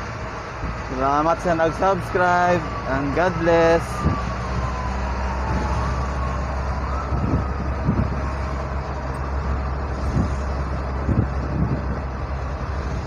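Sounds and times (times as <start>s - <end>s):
road noise: 0.0s - 13.0s.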